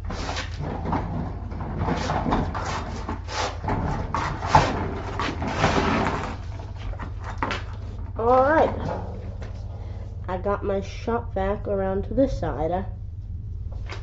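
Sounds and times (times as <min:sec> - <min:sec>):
shop vac hose knocking and scraping: 0:00.0 - 0:10.3.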